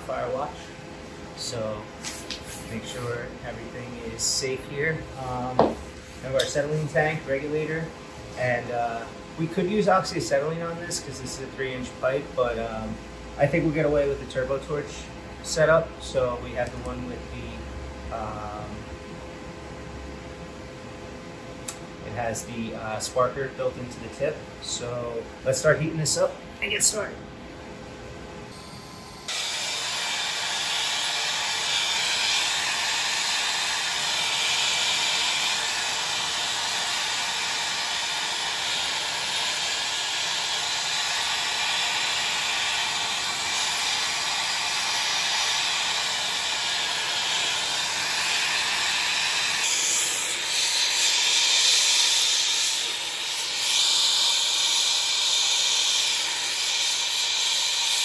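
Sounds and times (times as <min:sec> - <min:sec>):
torch flame hissing: 0:29.3 - 0:58.0.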